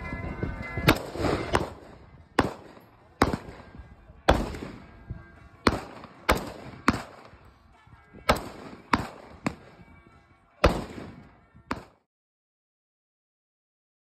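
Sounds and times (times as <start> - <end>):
gunshots with ringing tail: 0.8 - 12.0.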